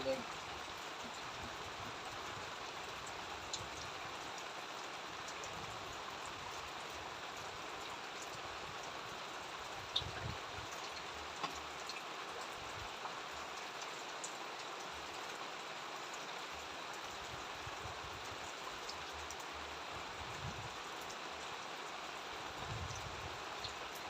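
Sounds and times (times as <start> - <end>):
steady rain: 0.0 - 24.0
raindrop ticks: 3.0 - 4.6, 9.8 - 17.4, 18.2 - 19.7.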